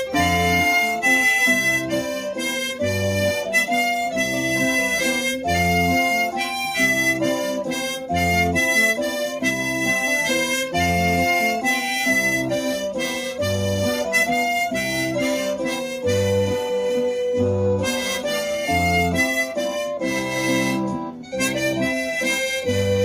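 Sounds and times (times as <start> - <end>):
acoustic guitar: 0.0 - 23.0
harmonica melody: 0.0 - 23.0.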